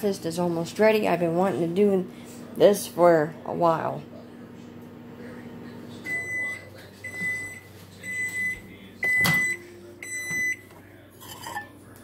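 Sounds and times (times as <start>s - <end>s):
microwave oven humming: 0.0s - 12.0s
microwave beeps: 6.0s - 10.7s.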